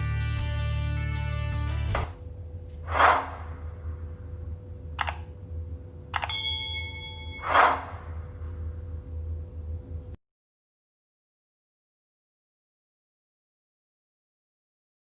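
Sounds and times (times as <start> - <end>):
steady low hum: 1.6 - 10.2
whoosh: 2.8 - 4.1, 7.4 - 8.4
sharp click: 5.0 - 5.3, 6.1 - 6.4
bell-like ding: 6.3 - 7.6.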